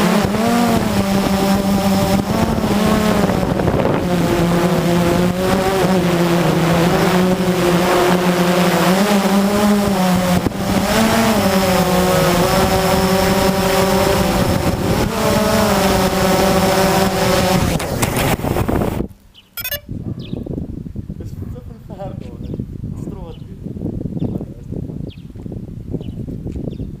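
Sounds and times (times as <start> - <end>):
quadcopter propellers buzzing: 0.0 - 19.0, 19.6 - 19.8.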